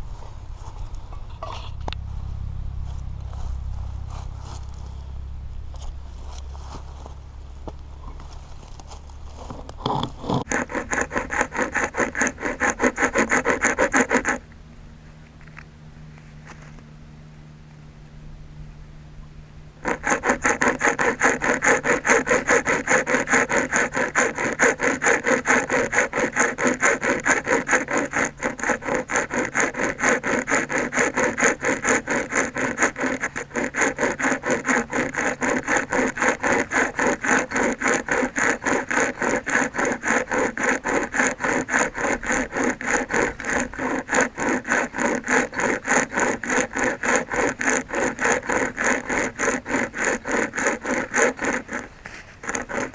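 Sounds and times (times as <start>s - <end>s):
chain saw sawing through wood: 8.8s - 17.0s, 19.6s - 52.9s.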